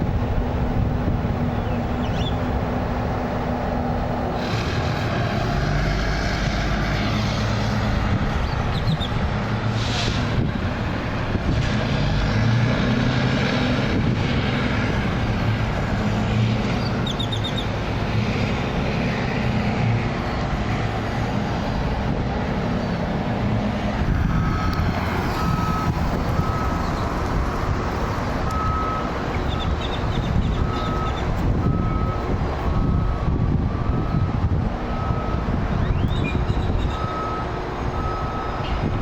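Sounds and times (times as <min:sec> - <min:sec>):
heavy machinery rumbling: 0:00.0 - 0:39.0
reversing alarm beeps: 0:24.3 - 0:27.0, 0:28.4 - 0:38.9.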